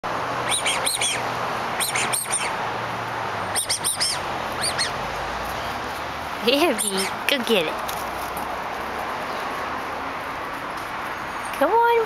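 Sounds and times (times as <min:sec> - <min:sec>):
dog whining: 0:00.4 - 0:01.2, 0:01.8 - 0:02.6, 0:03.5 - 0:05.0.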